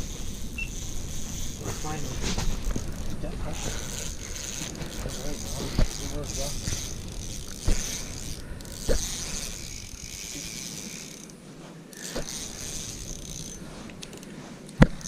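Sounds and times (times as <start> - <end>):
fishing reel ratcheting whir: 0.0 - 14.3.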